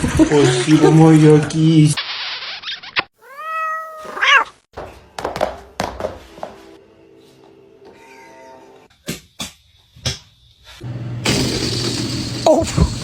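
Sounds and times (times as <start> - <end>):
cat meowing: 3.2 - 4.6, 7.9 - 8.7.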